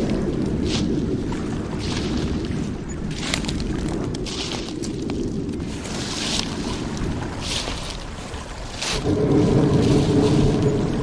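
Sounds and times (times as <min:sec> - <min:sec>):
steady low rumble: 0:00.0 - 0:11.0
footsteps crunching on forest floor: 0:03.1 - 0:05.2.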